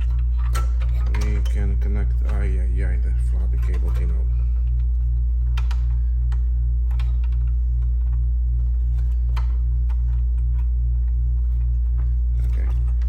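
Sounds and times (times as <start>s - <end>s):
computer parts clicking: 0.0s - 8.2s
pulsing electrical hum: 0.0s - 13.0s.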